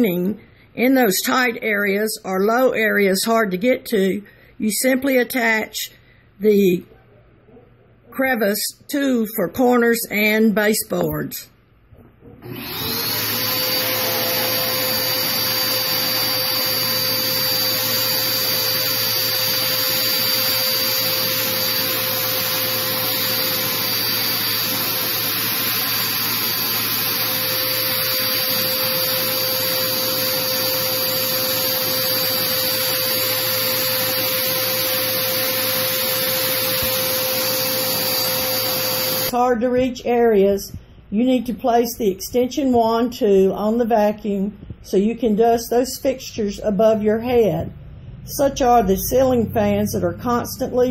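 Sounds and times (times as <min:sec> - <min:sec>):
vacuum cleaner running: 0:12.2 - 0:39.4.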